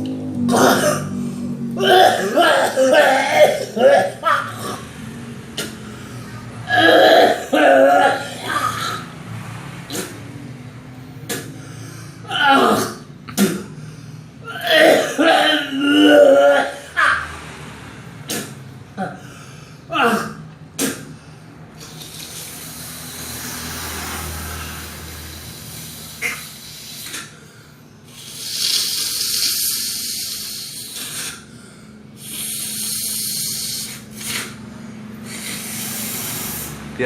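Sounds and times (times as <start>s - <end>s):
person snorting through nose: 9.9s - 10.3s, 11.2s - 15.7s, 18.2s - 36.9s.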